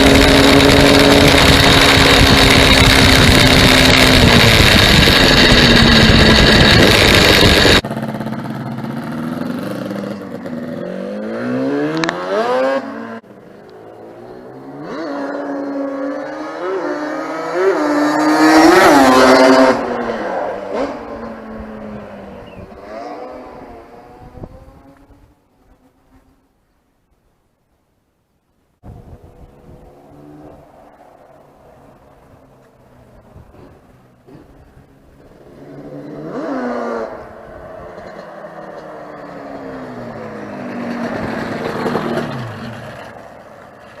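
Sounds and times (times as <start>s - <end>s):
two-stroke motorcycle engine revving: 0.0s - 25.3s, 35.4s - 44.0s.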